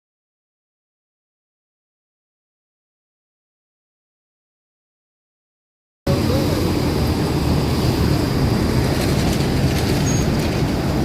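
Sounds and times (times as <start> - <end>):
metro train rumbling: 6.1 - 11.0.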